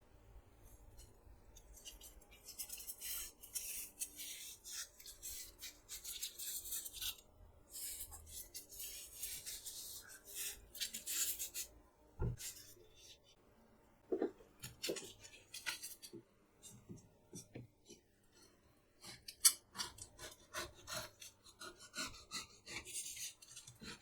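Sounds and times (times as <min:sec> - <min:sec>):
hands rubbing melon rind: 0:01.6 - 0:11.7.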